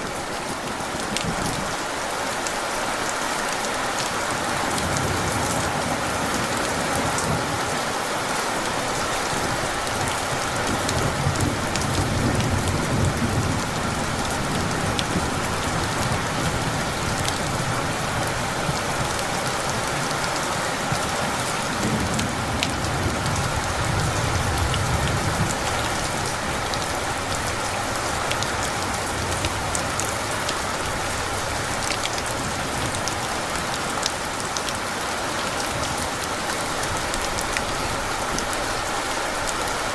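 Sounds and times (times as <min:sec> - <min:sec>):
heavy rain hissing: 0:00.0 - 0:39.9
rolling thunder rumbles: 0:09.0 - 0:34.4.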